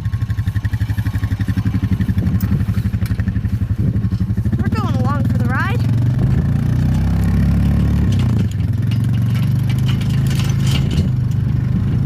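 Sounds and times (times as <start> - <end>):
atv engine running: 0.0 - 12.0
light rattling: 0.0 - 12.0.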